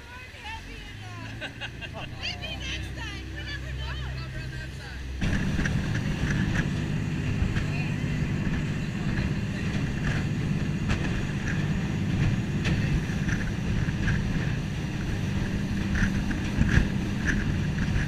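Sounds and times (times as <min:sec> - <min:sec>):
boat engine running: 0:00.0 - 0:18.0
bursts of water noise: 0:02.6 - 0:18.0
wind on the microphone: 0:05.2 - 0:18.0.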